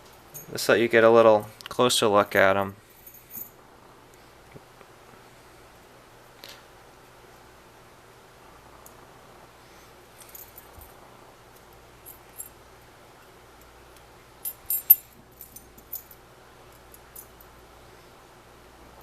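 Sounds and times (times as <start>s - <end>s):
padlocks clicking and clinking: 14.4s - 16.2s.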